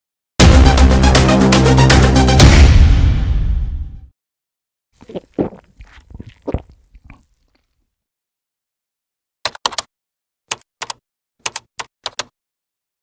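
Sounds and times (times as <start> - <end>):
keyboard keys tapping: 9.5 - 9.9, 10.5 - 12.3.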